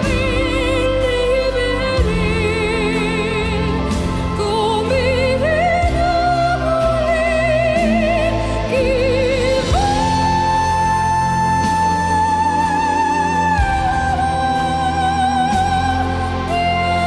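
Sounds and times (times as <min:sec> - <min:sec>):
slow melody with vibrato: 0:00.0 - 0:17.0.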